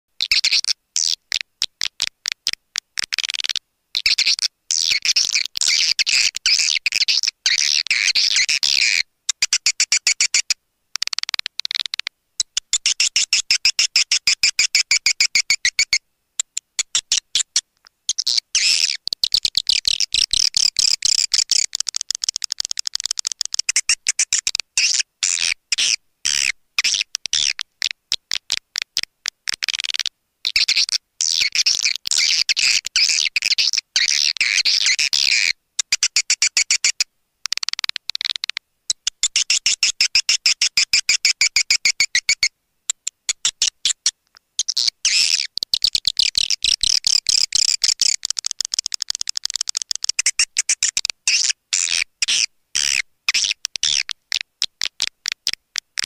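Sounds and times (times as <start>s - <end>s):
swiftlet clicking twitters: 11.0s - 12.1s, 18.1s - 24.6s, 37.5s - 41.1s, 44.6s - 51.4s.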